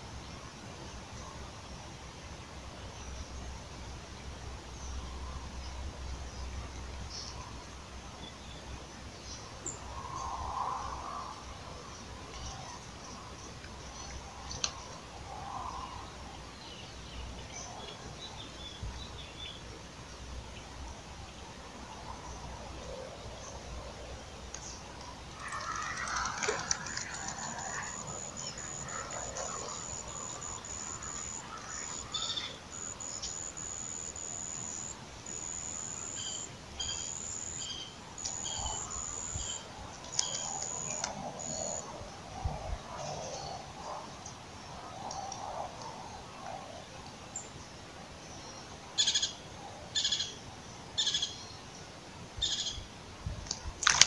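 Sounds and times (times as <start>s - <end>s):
faint chirps: 22.0s - 41.9s
insect high trill: 25.3s - 41.9s.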